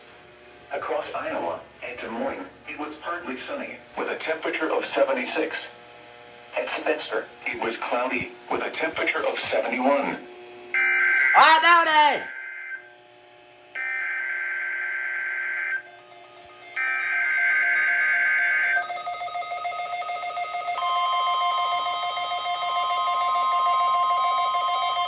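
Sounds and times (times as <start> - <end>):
piercing warning alarm tone: 10.7 - 12.9, 13.8 - 25.0.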